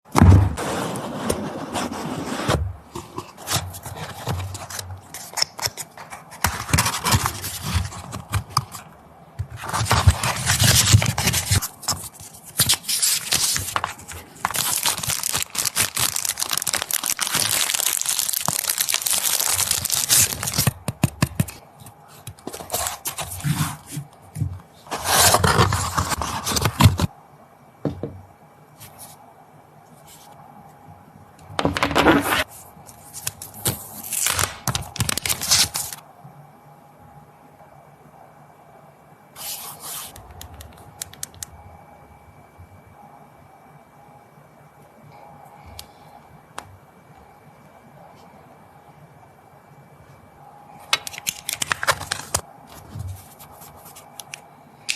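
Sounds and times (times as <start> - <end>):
cardboard sliding and scraping: 0.2 - 4.5
plastic wrap tearing and crinkling: 9.7 - 20.8, 33.1 - 36.0, 51.0 - 52.4.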